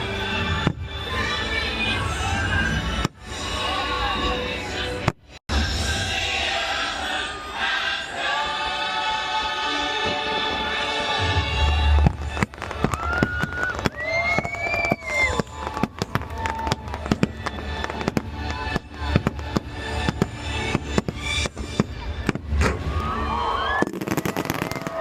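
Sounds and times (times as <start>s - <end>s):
music: 0.0s - 25.0s
fireworks bangs: 10.0s - 25.0s.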